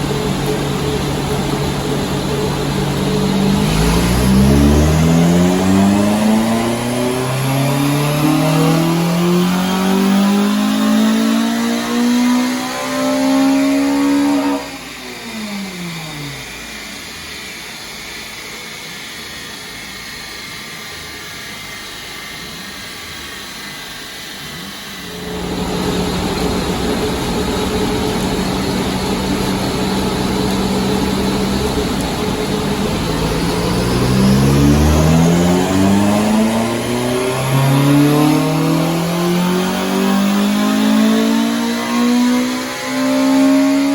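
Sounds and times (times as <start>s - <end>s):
loud steady rush: 0.0s - 15.3s, 24.4s - 43.9s
car engine revving: 0.0s - 16.9s, 24.9s - 43.9s.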